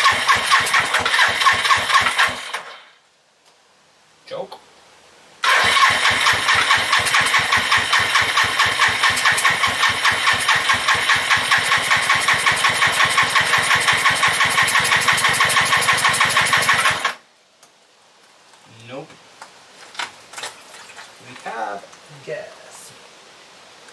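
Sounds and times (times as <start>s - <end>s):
motorcycle engine cranking: 0.0s - 2.8s, 5.4s - 17.2s.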